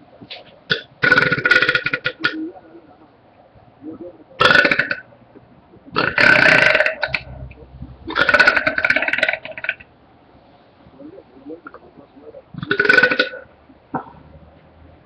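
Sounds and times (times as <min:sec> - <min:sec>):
person belching: 0:00.7 - 0:02.4, 0:04.4 - 0:05.1, 0:05.9 - 0:07.4, 0:08.1 - 0:09.8, 0:12.6 - 0:13.4.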